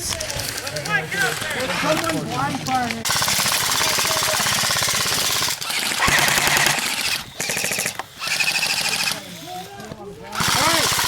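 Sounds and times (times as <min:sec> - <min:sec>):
airsoft guns firing full-auto: 0:03.0 - 0:11.0
gun motor whine: 0:03.1 - 0:11.0.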